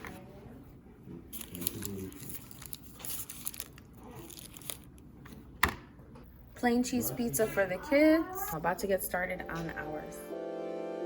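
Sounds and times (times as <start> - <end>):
food crinkling and crunching: 1.1 - 5.4.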